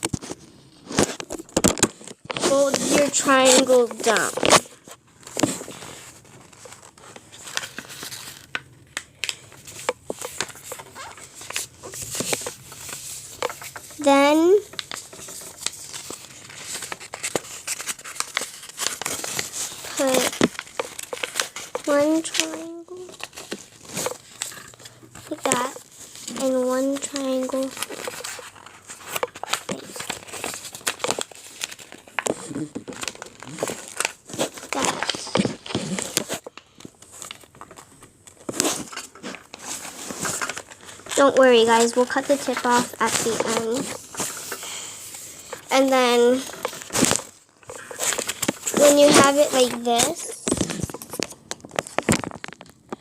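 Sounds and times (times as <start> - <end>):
paper folding and crinkling: 0.0 - 53.0.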